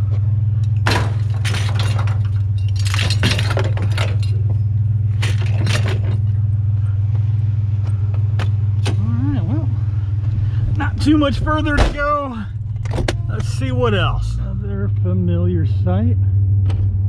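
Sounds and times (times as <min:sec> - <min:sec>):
truck engine idling: 0:00.0 - 0:17.0
metal frame clinking and rattling: 0:00.6 - 0:06.6.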